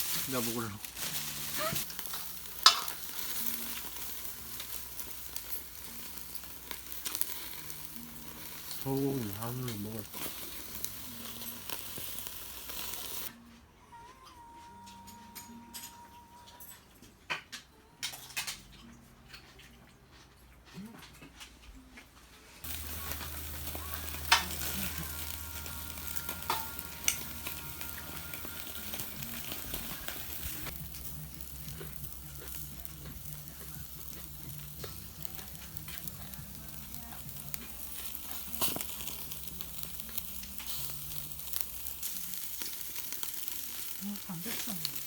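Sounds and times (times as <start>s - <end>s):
meat sizzling on a grill pan: 0.0s - 13.3s, 22.6s - 45.0s.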